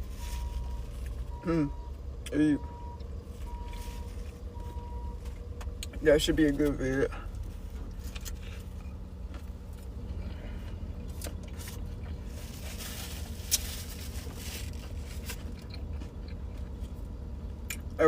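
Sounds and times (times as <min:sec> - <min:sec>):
car engine idling: 0:00.0 - 0:18.0
food packaging rustling: 0:11.3 - 0:15.6.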